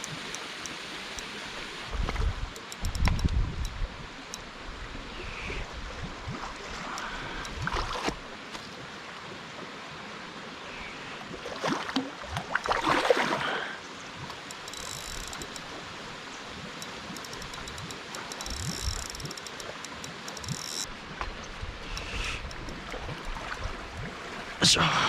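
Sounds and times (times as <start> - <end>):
outdoor background noise by water: 0.0 - 25.0
fine rapid ticking: 14.5 - 15.7, 16.8 - 20.9.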